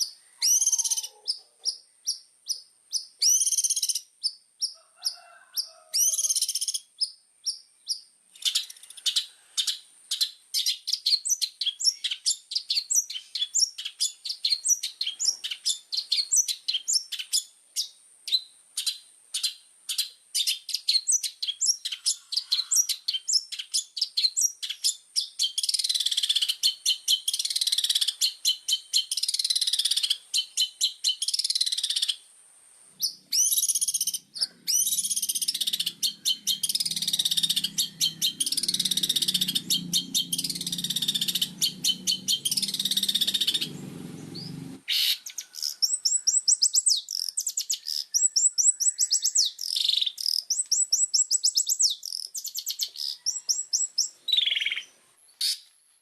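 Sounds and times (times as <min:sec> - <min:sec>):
bird singing rapid high notes: 0:00.0 - 0:01.2, 0:33.0 - 0:48.4
low buzzing: 0:35.2 - 0:44.8.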